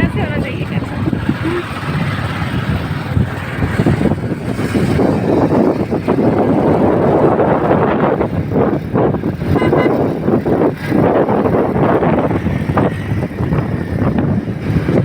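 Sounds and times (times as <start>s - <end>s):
motor vehicle moving: 0.0s - 15.0s
short high beeps: 9.6s - 10.0s.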